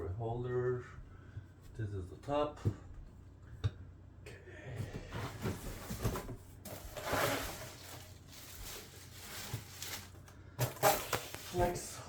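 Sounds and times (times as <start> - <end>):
packaging rustle: 5.5 - 11.8.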